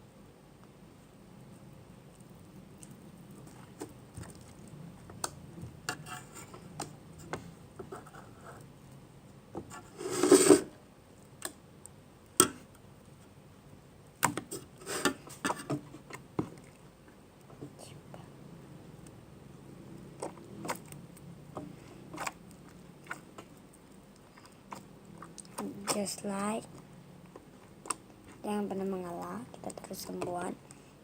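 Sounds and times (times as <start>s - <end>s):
slime squishing: 1.0s - 9.0s, 19.9s - 30.7s.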